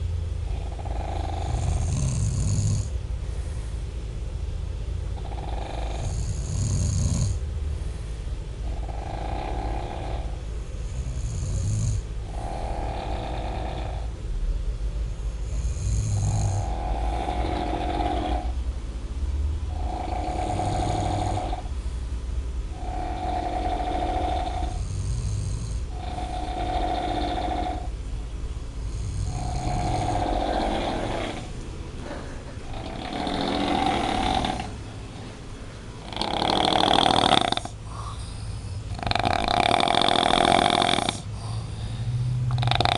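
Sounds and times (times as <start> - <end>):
person snoring loudly: 0.5 - 2.9, 5.2 - 7.4, 8.6 - 14.1, 15.4 - 18.6, 19.7 - 21.7, 22.7 - 27.9, 28.9 - 35.2, 36.0 - 42.9.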